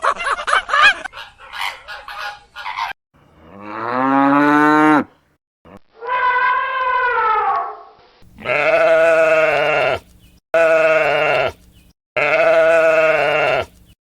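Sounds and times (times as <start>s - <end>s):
cow mooing: 3.2s - 5.1s, 10.6s - 11.6s, 12.2s - 13.7s
sheep bleating: 8.4s - 10.0s, 10.6s - 11.6s, 12.2s - 13.8s.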